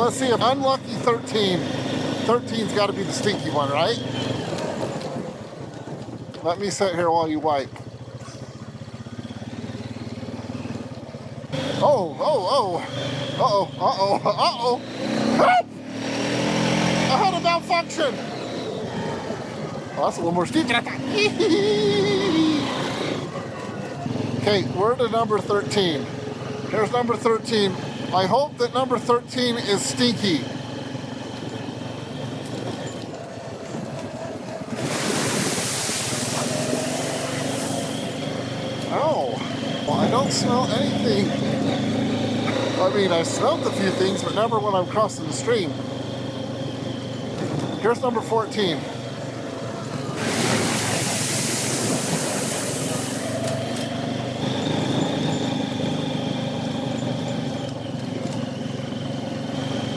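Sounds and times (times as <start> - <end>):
atv engine running: 0.0 - 59.9
tyres splashing through water: 31.0 - 38.9, 47.0 - 54.6
water splashing: 34.4 - 38.3, 50.1 - 53.6.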